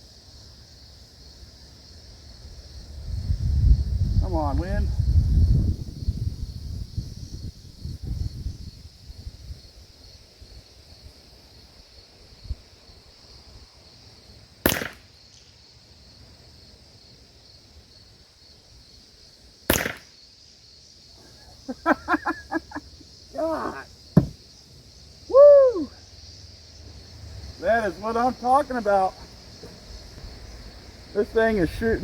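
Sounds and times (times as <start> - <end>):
wind buffeting microphone: 2.5 - 9.8
rifle shots cracking: 14.6 - 15.5, 19.7 - 20.2.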